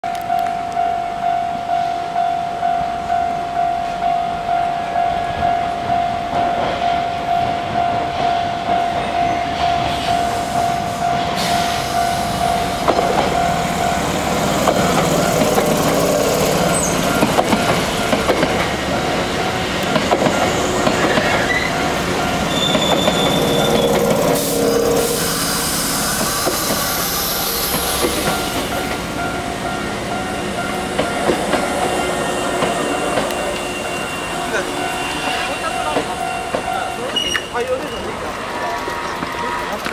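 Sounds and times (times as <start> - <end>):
level-crossing warning bell: 0.0 - 39.9
train wheels clicking over rail joints: 6.3 - 24.5, 25.5 - 39.9
high wheel squeal: 14.5 - 18.0, 20.4 - 39.9.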